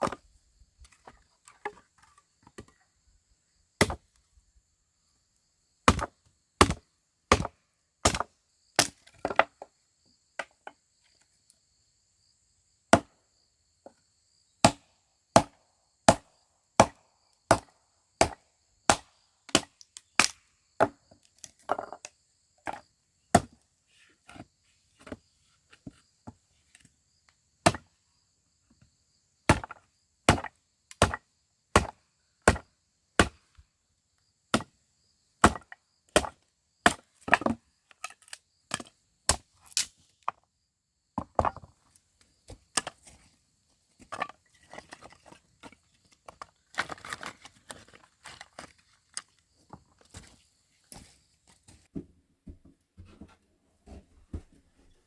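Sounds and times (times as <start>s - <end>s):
blade chopping into wood: 3.8s - 4.0s, 5.9s - 9.0s, 15.4s - 21.0s, 29.5s - 31.2s, 31.8s - 32.6s, 33.2s - 33.4s, 35.4s - 37.6s.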